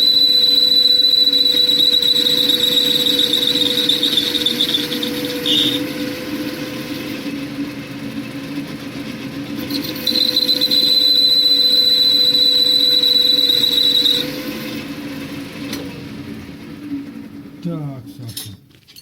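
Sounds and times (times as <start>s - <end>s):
high-pitched squeal: 0.0s - 6.3s, 9.6s - 14.6s
lathe humming: 0.0s - 18.1s.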